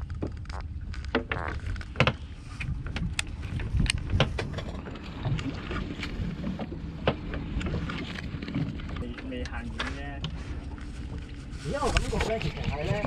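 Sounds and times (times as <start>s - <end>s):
wind on microphone: 0.0s - 8.9s
boat engine low rumble: 0.0s - 13.0s
sharp knocks and clicks: 0.1s - 4.9s.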